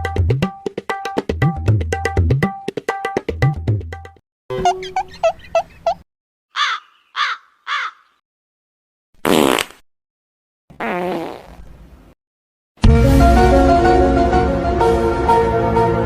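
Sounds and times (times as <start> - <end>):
crow cawing: 6.5 - 8.2.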